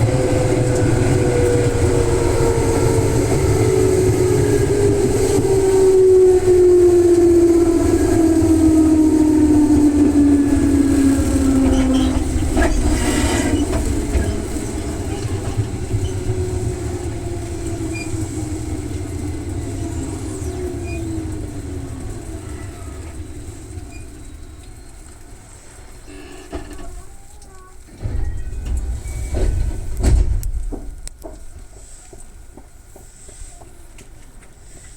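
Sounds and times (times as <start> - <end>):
train low rumble: 0.0 - 34.9
train motor whine falling: 9.4 - 31.5.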